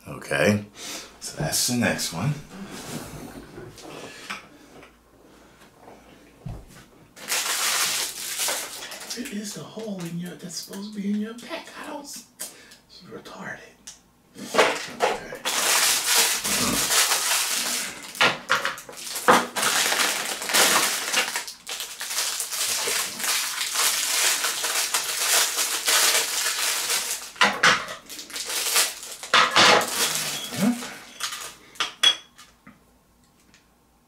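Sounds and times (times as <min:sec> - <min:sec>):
plastic packaging crinkling: 0:07.2 - 0:10.3, 0:15.4 - 0:31.6.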